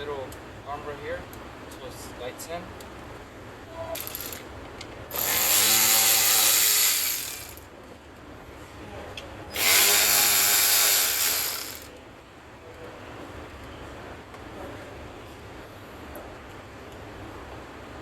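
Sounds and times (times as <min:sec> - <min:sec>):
cordless power tool whine: 0:04.0 - 0:04.4, 0:05.1 - 0:07.6, 0:09.5 - 0:11.9.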